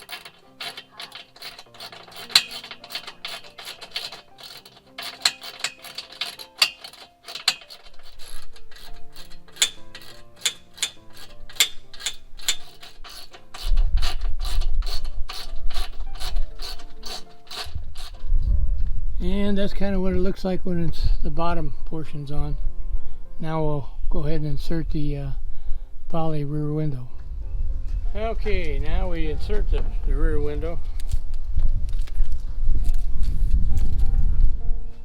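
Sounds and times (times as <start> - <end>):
ratchet wrench clicking: 0.0 - 18.5
background music: 0.0 - 31.0, 32.5 - 35.0.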